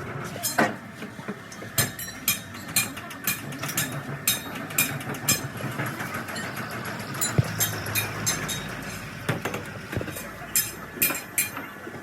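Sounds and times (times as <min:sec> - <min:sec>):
sharp knocks: 0:07.2 - 0:10.2.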